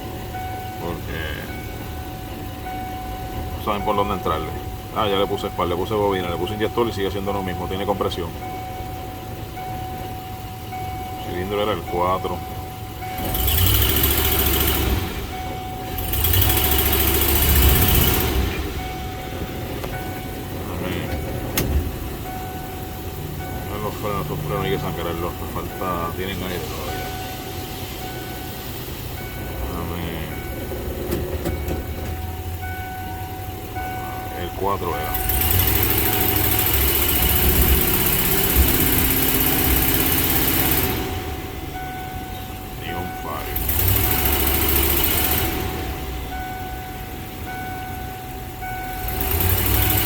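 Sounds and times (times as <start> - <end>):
car engine revving: 11.3 - 47.6, 48.4 - 50.0.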